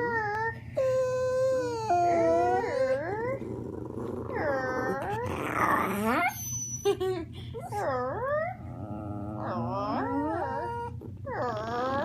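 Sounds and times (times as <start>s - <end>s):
growly dog howl: 8.0s - 12.0s.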